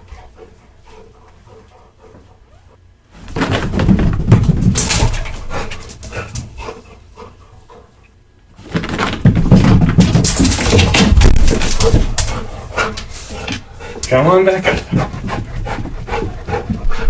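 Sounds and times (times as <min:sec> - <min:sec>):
dog paws running on hard floor: 0:03.2 - 0:06.8, 0:08.6 - 0:17.0.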